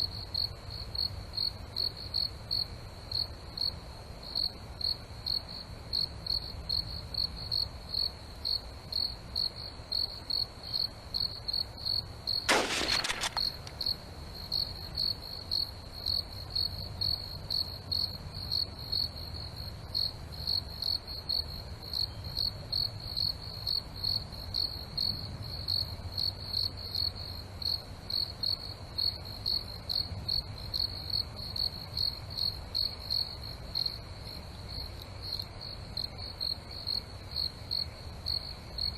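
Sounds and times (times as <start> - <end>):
cricket chirping: 0.0 - 38.9
sharp burst of noise: 12.5 - 13.7.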